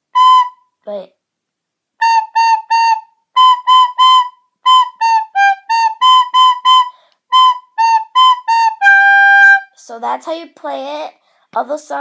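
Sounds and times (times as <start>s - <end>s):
recorder playing short notes: 2.0s - 9.6s.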